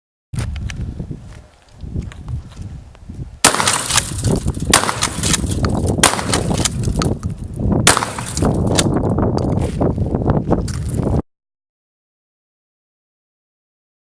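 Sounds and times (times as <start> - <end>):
continuous loud noise: 2.9 - 9.8
gunfire cracks: 3.4 - 7.1, 7.8 - 8.9.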